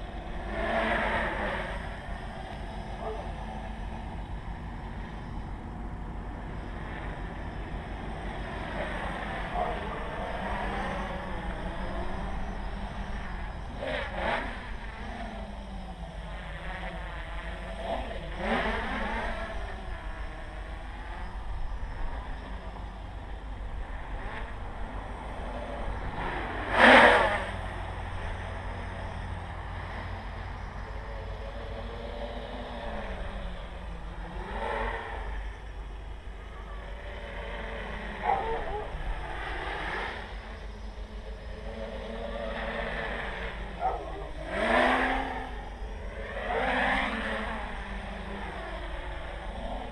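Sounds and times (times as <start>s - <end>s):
quadcopter propellers whining: 0.0s - 49.9s
steady low rumble: 0.0s - 49.9s.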